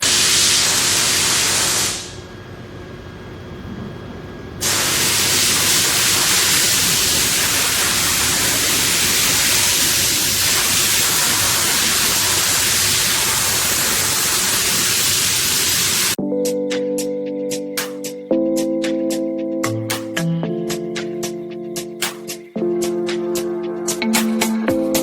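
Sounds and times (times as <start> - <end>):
steady static hiss: 0.0 - 16.2.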